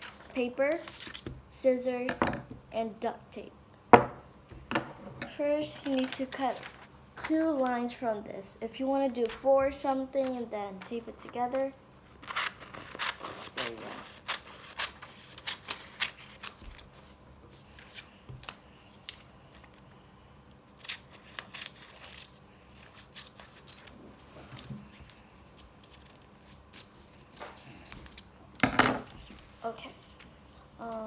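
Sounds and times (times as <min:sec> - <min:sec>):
paper handling: 0:00.0 - 0:01.4, 0:05.6 - 0:07.8, 0:09.1 - 0:11.6, 0:12.2 - 0:19.8, 0:20.8 - 0:31.0
scissors snipping paper: 0:12.2 - 0:16.9, 0:20.8 - 0:24.0, 0:24.6 - 0:28.3.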